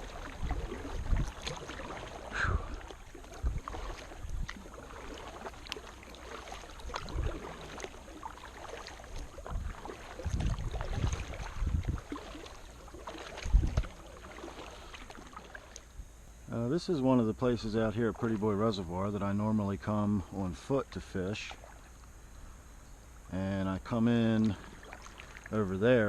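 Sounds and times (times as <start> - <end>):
paddle splashes and drips: 0.0 - 16.1, 17.1 - 26.0.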